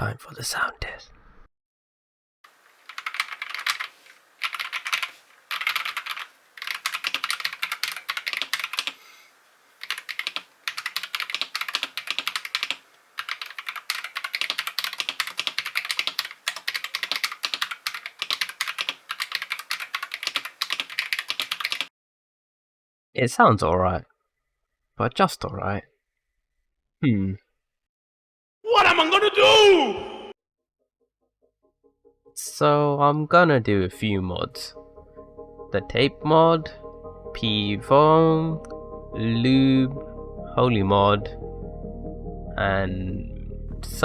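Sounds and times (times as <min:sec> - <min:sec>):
mechanical keyboard key clacks: 0:02.9 - 0:09.0, 0:09.8 - 0:21.9.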